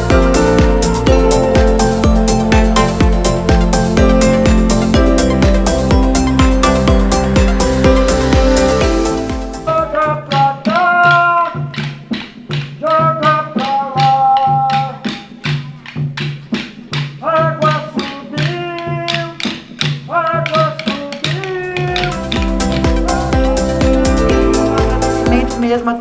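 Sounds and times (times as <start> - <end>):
sliding held-note melody: 0.0 - 10.2, 21.9 - 26.0
clicking beat: 0.0 - 26.0.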